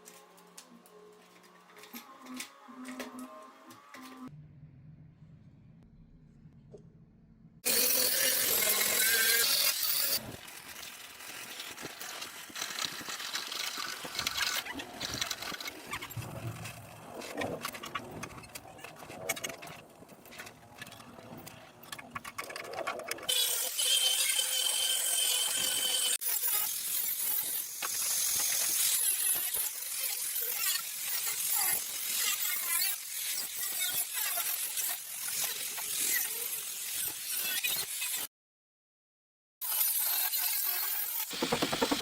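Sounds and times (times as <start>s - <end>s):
knocking and clatter: 41.3s - 42.0s.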